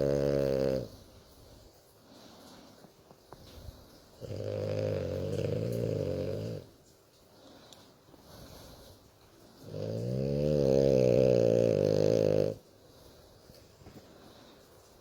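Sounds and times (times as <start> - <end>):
dog snoring: 0.0 - 1.0, 4.2 - 6.7, 9.6 - 12.6
faint breathing: 0.0 - 15.0.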